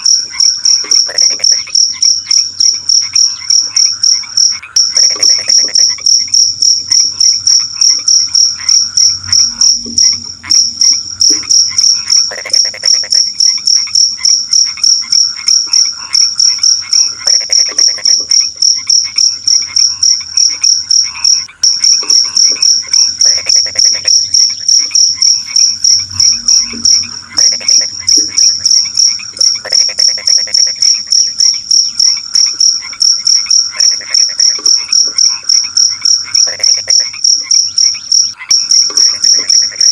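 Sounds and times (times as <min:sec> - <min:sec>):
cricket chirping: 0:00.0 - 0:39.9
frogs croaking: 0:00.0 - 0:39.9.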